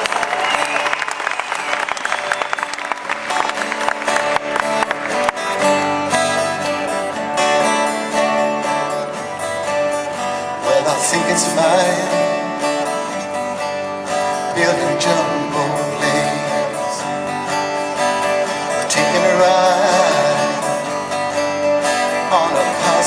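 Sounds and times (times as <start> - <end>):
audience applause: 0.0 - 6.4
acoustic guitar playing: 1.6 - 23.0.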